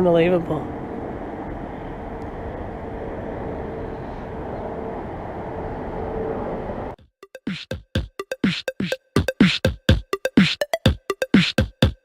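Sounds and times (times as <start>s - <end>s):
road traffic rumble: 0.0s - 7.0s.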